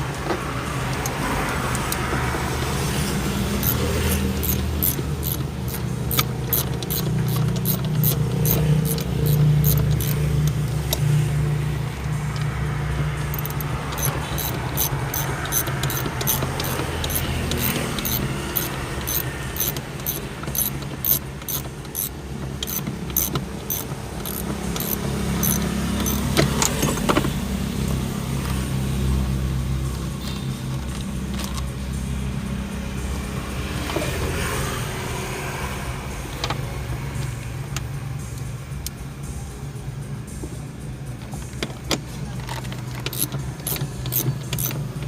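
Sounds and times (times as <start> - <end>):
car engine running: 0.0 - 28.4, 40.0 - 45.0.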